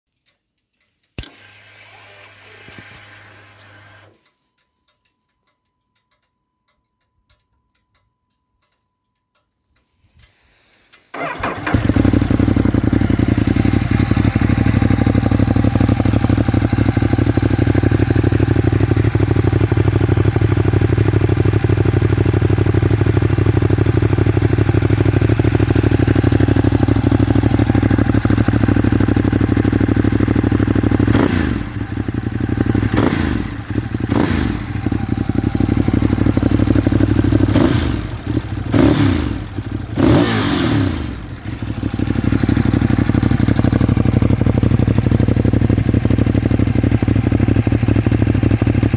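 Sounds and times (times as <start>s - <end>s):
motorcycle engine idling: 11.1s - 48.9s.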